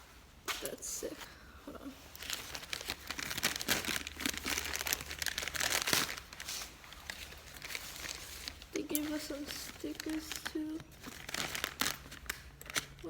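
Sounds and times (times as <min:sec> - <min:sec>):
packaging being crumpled: 0:02.1 - 0:13.0.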